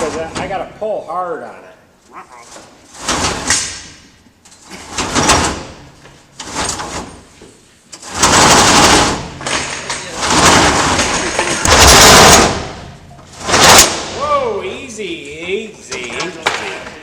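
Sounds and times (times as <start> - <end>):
steel chain scraping and rattling: 4.7 - 7.4, 8.0 - 14.2.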